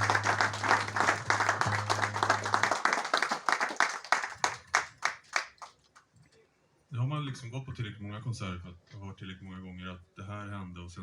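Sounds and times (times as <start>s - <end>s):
audience applauding: 0.0s - 5.9s.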